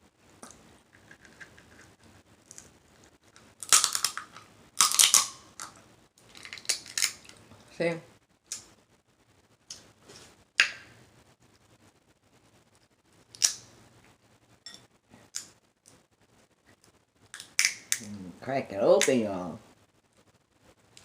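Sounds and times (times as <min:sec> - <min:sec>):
crab shells cracking: 0:03.3 - 0:07.4, 0:13.3 - 0:13.7, 0:17.3 - 0:18.1.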